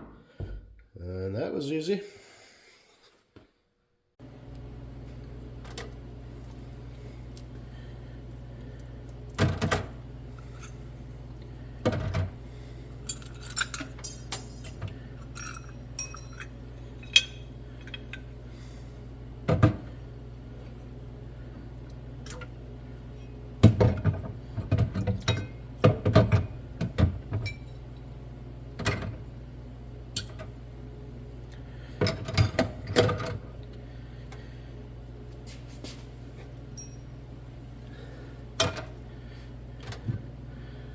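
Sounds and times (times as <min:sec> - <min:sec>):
steady low hum: 0:04.2 - 0:40.9
metal parts knocking and clinking: 0:13.1 - 0:17.3.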